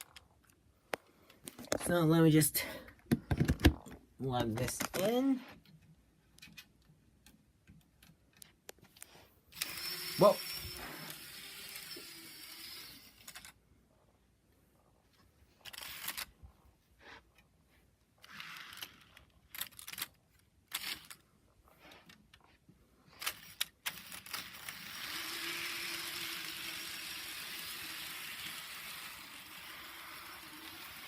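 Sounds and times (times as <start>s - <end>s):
small parts clicking and rattling: 0.0s - 1.9s, 2.9s - 13.6s, 15.5s - 16.6s, 18.2s - 31.0s
model train running on track: 25.0s - 31.0s.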